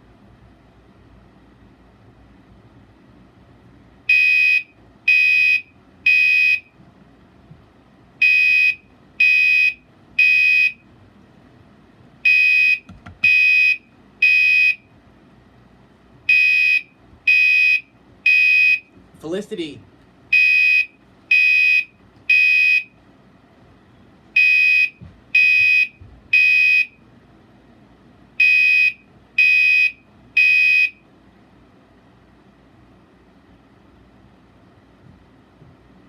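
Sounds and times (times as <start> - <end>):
fire alarm horn tones: 4.1 - 6.7, 8.2 - 10.8, 12.2 - 14.8, 16.3 - 18.9, 20.3 - 22.9, 24.4 - 27.0, 28.4 - 31.0.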